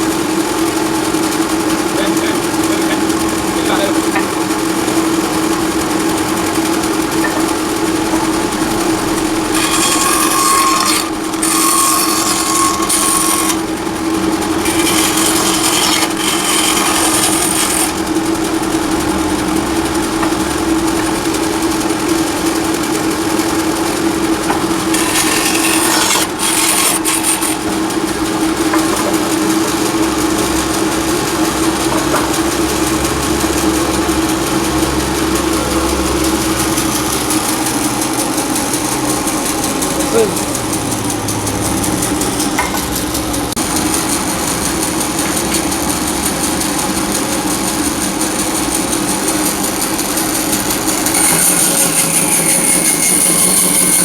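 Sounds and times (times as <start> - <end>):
wood lathe motor humming: 0.0 - 54.0
turning tool cutting wood hiss: 7.1 - 19.0, 23.0 - 31.9.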